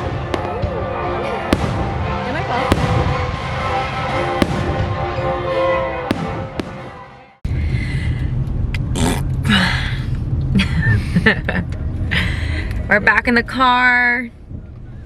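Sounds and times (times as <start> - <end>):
fireworks banging: 0.0 - 7.1
orchestra music: 0.0 - 7.4.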